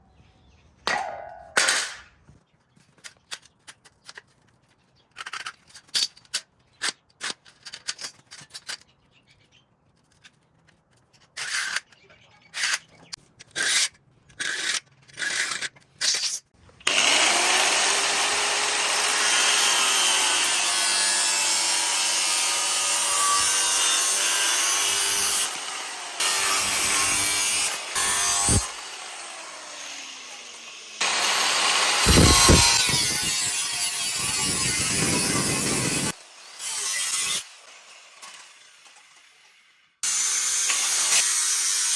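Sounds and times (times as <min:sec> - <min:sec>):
power tool whining: 0:16.8 - 0:41.8.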